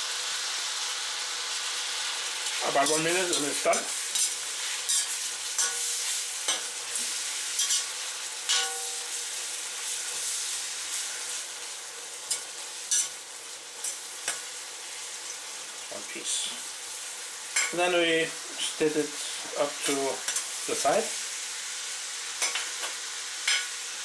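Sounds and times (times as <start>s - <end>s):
meat sizzling in hot oil: 0.0s - 24.0s
utensil scraping a wok: 2.1s - 13.2s, 22.4s - 23.8s.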